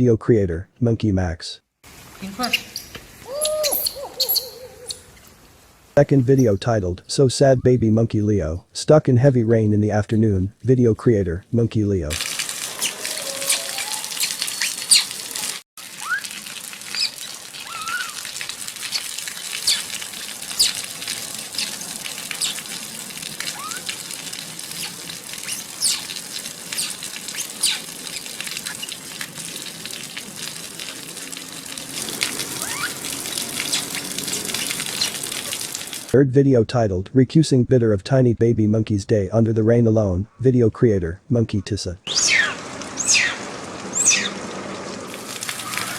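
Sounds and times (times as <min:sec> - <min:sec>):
heavy rain pouring: 0:12.1 - 0:36.2, 0:42.1 - 0:45.9
high-pitched downward chirps: 0:12.8 - 0:15.1.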